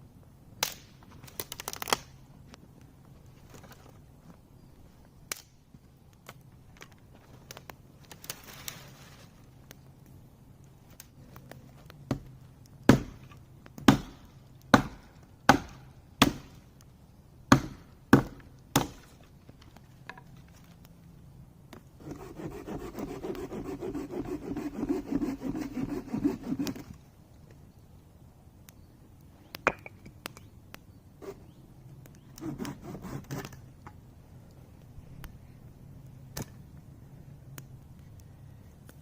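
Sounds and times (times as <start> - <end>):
axe chopping firewood: 12.1 - 12.3, 12.9 - 16.6, 17.5 - 19.2.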